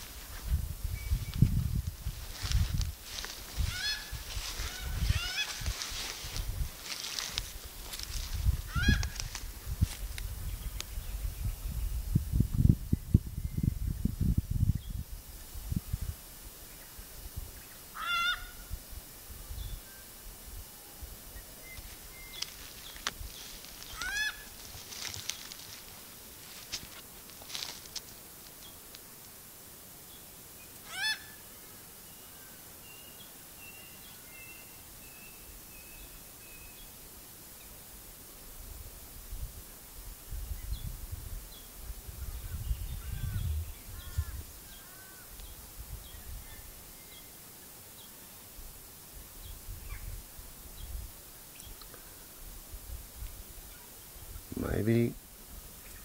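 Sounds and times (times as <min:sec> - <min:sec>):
wind rumble on microphone: 0:00.0 - 0:17.8, 0:18.4 - 0:22.4, 0:38.5 - 0:46.8, 0:49.2 - 0:51.8
birds giving sharp scolding calls: 0:03.5 - 0:07.3, 0:08.7 - 0:09.4, 0:18.0 - 0:18.6, 0:22.3 - 0:25.6, 0:30.8 - 0:31.4.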